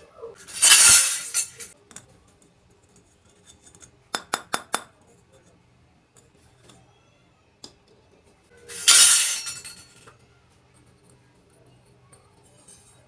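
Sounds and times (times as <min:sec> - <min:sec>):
toy kitchenware clinking and rattling: 0:00.4 - 0:02.1, 0:08.6 - 0:10.3, 0:11.9 - 0:13.0.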